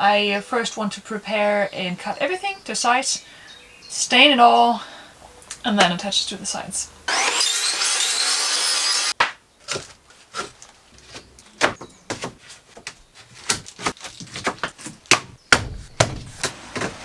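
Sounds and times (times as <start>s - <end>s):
power saw cutting wood: 7.1s - 9.2s
wooden boards knocking: 11.1s - 17.0s.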